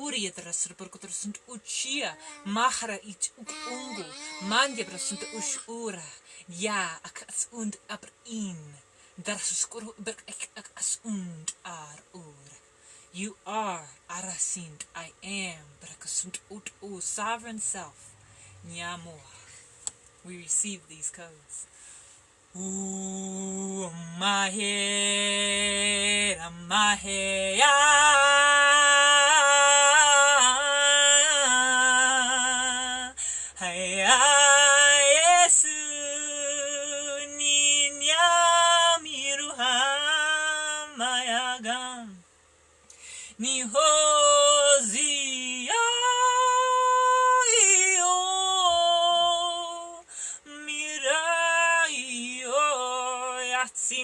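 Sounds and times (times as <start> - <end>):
woman singing wordless syllables: 1.0 - 6.2, 22.5 - 42.2, 43.4 - 54.0.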